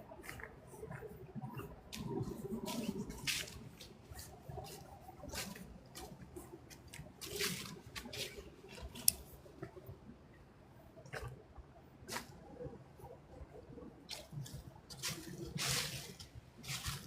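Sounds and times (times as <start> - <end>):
footsteps in fallen leaves: 1.9 - 9.4, 14.1 - 17.0.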